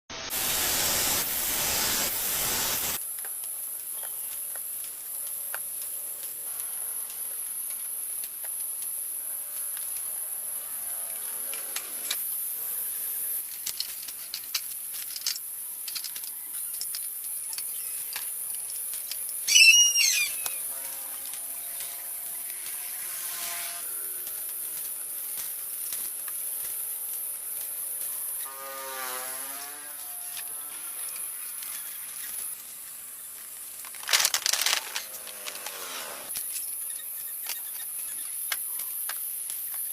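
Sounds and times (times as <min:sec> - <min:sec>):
steady high hiss: 0:00.1 - 0:39.9
short bird call: 0:19.5 - 0:20.4.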